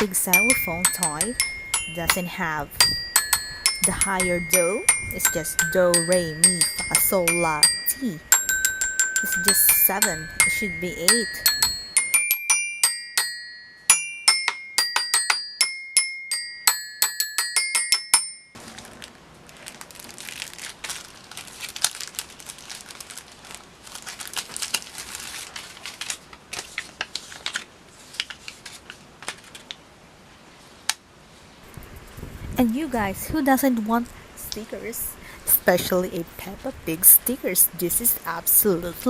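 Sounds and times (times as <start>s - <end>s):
toy xylophone notes: 0.0s - 18.6s
packaging crinkling: 18.6s - 29.8s.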